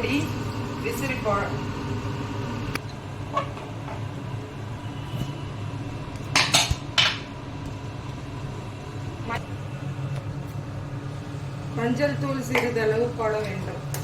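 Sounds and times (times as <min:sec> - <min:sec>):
metal cookware clanking: 0:06.3 - 0:07.3.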